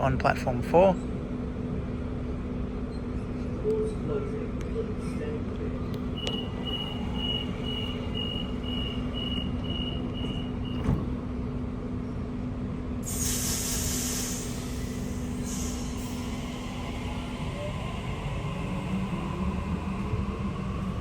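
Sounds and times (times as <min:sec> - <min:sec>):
train humming: 0:01.1 - 0:21.0
door warning beeps: 0:06.2 - 0:11.0
train doors thudding shut: 0:06.2 - 0:11.5
air hiss: 0:13.0 - 0:16.2.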